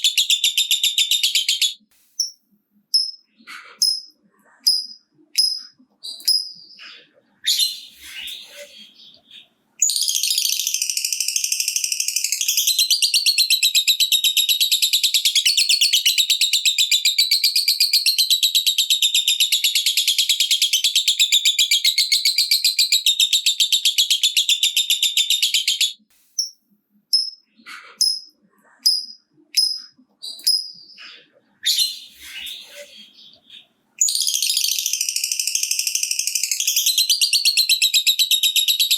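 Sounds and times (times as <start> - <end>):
short sharp bird chirps: 1.8 - 9.6, 26.1 - 34.2.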